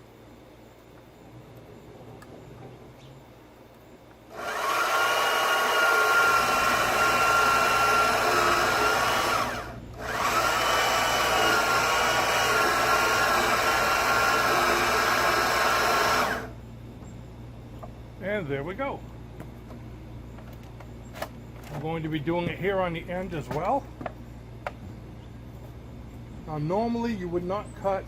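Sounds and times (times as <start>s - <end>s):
band saw cutting wood: 4.3s - 16.5s.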